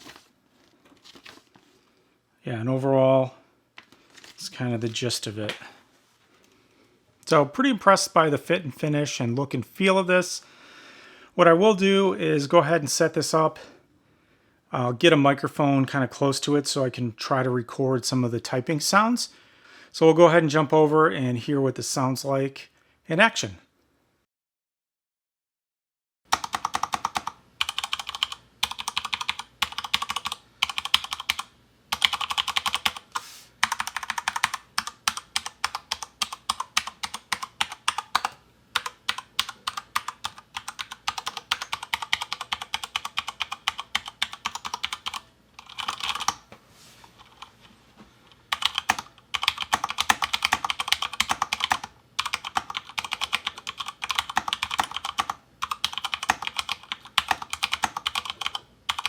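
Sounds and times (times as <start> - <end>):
mechanical keyboard typing: 26.3 - 46.4, 48.5 - 59.0.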